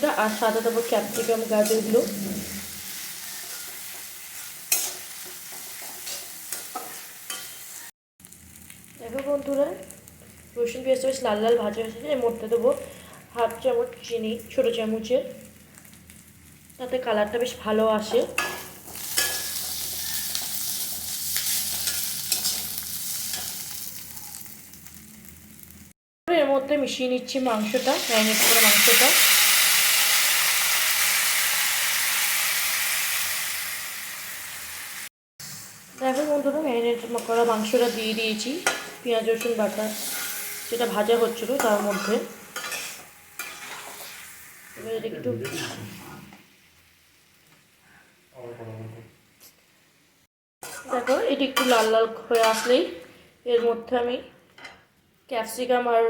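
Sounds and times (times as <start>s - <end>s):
paste sizzling in oil: 0.0s - 10.7s, 18.3s - 25.9s, 27.5s - 47.8s
spatula scraping pan: 2.9s - 7.9s, 18.4s - 24.5s, 38.6s - 44.3s, 45.4s - 46.2s, 50.6s - 52.9s.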